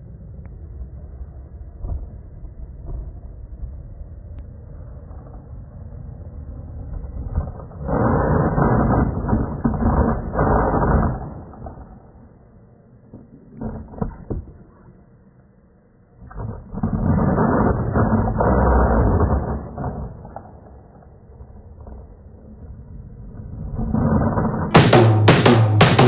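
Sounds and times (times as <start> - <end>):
skateboard wheels rolling and scraping: 4.5 - 12.3, 16.3 - 26.0.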